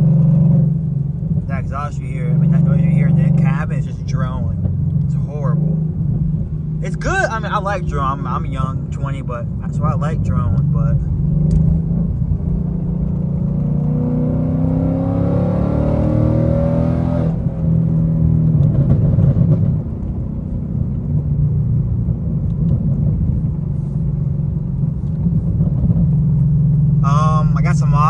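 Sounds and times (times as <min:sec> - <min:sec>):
car engine revving: 0:00.0 - 0:28.0.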